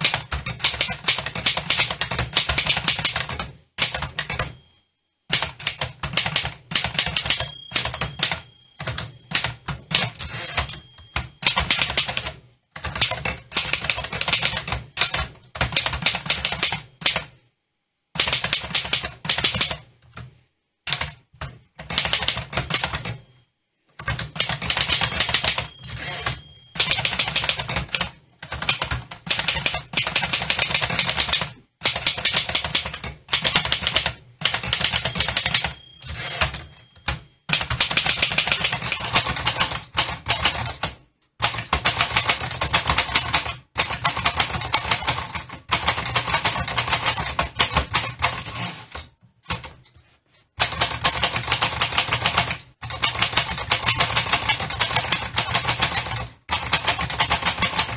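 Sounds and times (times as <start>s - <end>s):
typewriter keystroke clacks: 0.0s - 4.6s, 5.3s - 17.3s, 18.2s - 19.8s, 20.9s - 23.2s, 24.0s - 49.8s, 50.6s - 57.9s.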